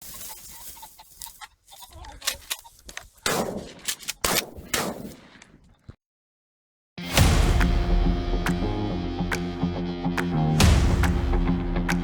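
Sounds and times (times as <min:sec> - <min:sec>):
shotgun shots echoing: 0:03.2 - 0:05.3.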